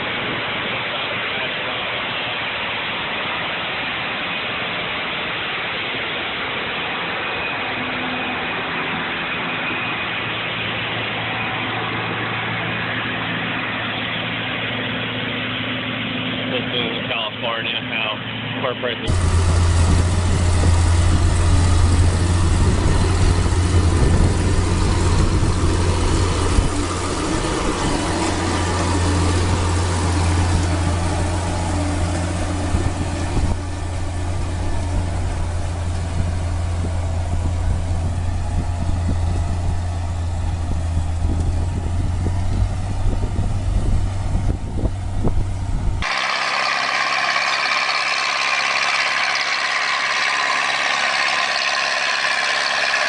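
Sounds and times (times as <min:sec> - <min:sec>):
large vehicle engine humming: 0:00.0 - 0:53.0
high-pitched mechanical sound: 0:02.5 - 0:44.0, 0:44.8 - 0:53.0.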